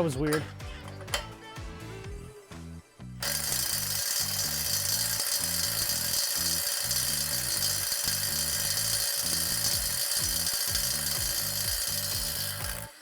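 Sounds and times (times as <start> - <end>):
background music: 0.0 - 5.6
impact driver hammering on nut: 9.3 - 13.0.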